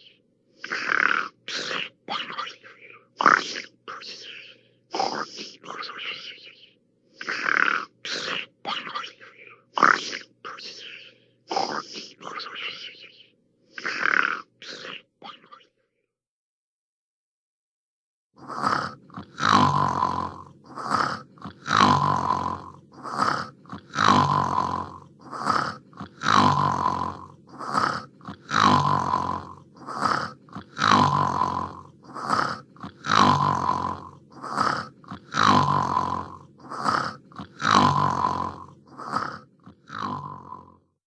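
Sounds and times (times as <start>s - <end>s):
cartoon snoring with whistle: 18.4s - 40.8s.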